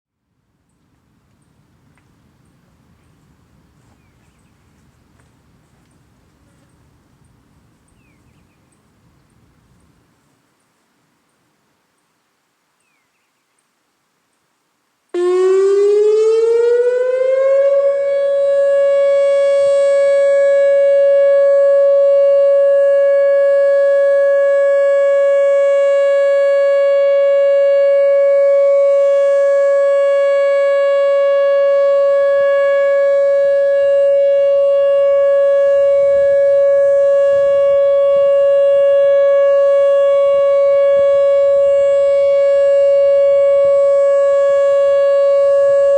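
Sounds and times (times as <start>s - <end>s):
electronic warning siren: 15.2s - 45.9s.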